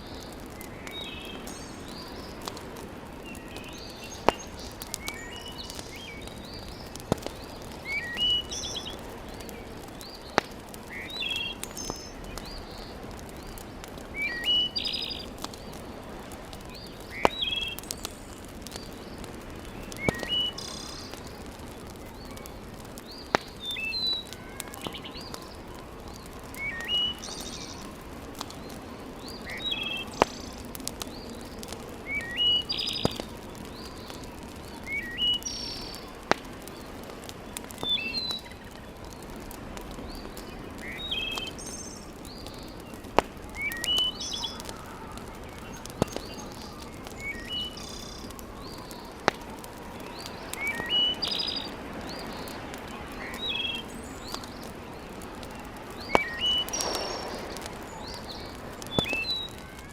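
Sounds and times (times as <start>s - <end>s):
fire popping: 0.0s - 59.9s
wood fire crackling: 0.0s - 59.9s
bird chirping: 3.3s - 9.6s, 16.8s - 21.2s, 50.5s - 51.7s, 56.0s - 59.6s.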